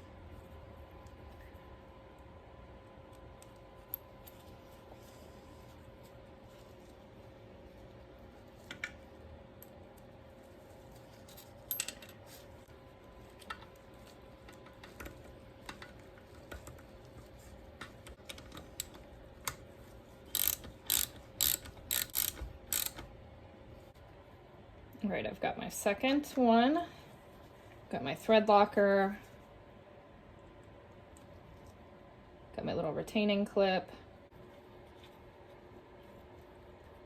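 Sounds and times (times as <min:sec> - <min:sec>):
hand tools clinking: 0:11.1 - 0:12.5.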